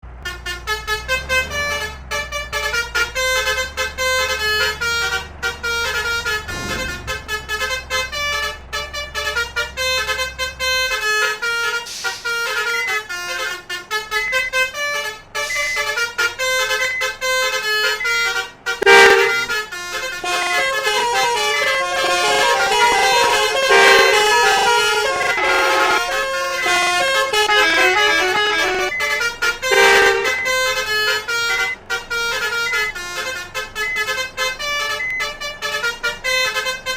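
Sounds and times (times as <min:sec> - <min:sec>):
multi-trumpet horn tune: 0:00.2 - 0:36.9.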